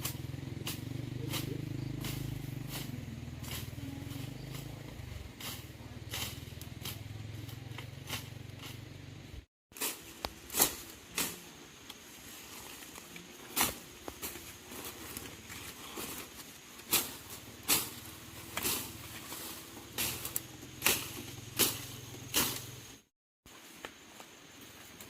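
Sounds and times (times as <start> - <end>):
engine running with sharp clicks: 0.0 - 9.5, 16.8 - 23.1.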